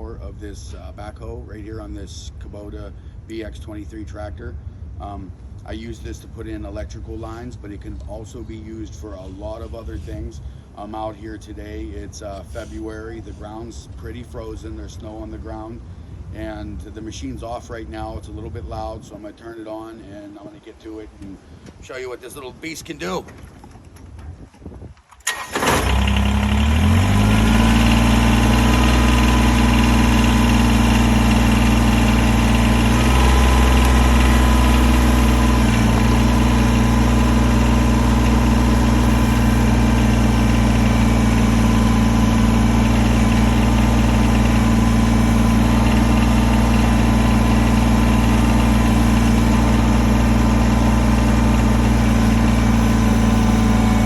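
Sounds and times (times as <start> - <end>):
tractor diesel engine starting: 25.1 - 54.0.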